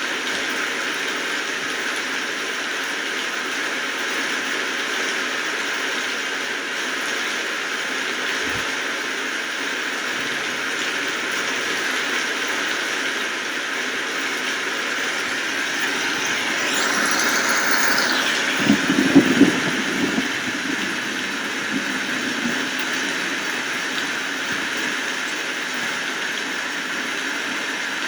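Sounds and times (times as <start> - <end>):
steady rain falling: 9.1 - 28.0
brief sweeping swell: 14.2 - 24.4.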